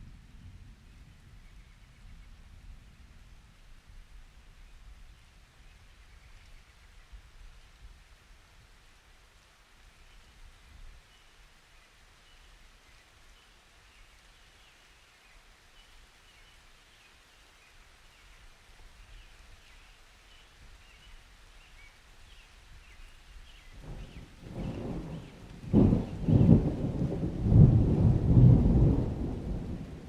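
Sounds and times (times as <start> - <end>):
soft rain: 0.0 - 30.0
low thunder rumble: 23.8 - 30.0.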